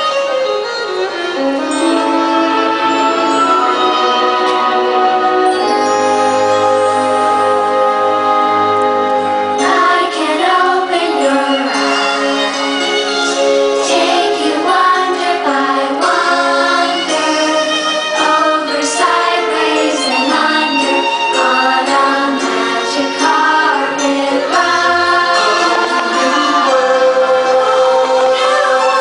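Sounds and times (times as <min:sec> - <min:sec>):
music with choir singing: 0:00.0 - 0:29.0.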